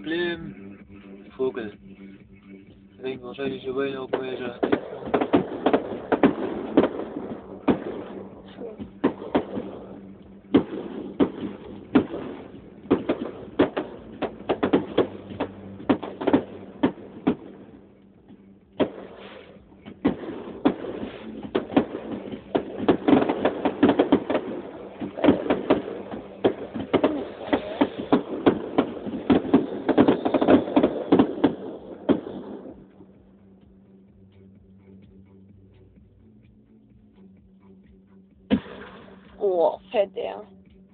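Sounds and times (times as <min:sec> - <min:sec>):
fireworks bangs and crackles: 0:03.0 - 0:33.2, 0:38.5 - 0:40.4.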